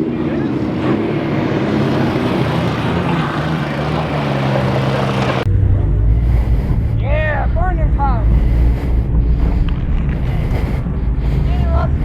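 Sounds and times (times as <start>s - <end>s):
car engines running: 0.0s - 12.0s
deep heavy engine rumble: 0.0s - 12.0s.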